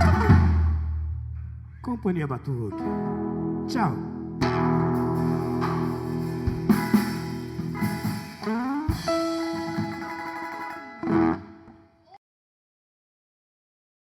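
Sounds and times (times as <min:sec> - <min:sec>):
guitar playing: 0:00.0 - 0:00.6, 0:02.6 - 0:11.8.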